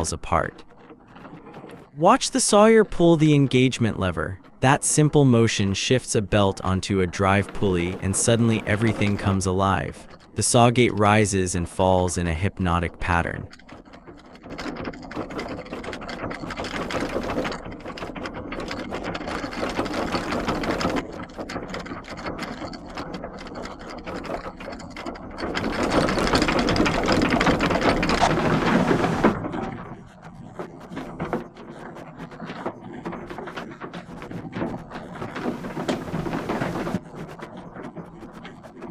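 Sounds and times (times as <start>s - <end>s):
sawmill machinery clattering: 1.9s - 13.6s, 24.4s - 29.5s, 35.0s - 37.0s.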